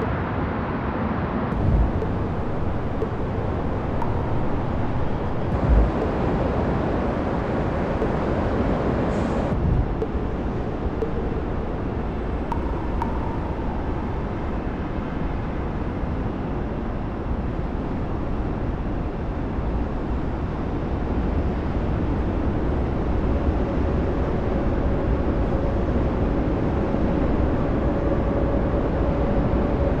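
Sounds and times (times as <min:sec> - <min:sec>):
distant city traffic rumble: 0:01.5 - 0:05.6
faint steady tone: 0:01.6 - 0:06.2, 0:09.8 - 0:20.5.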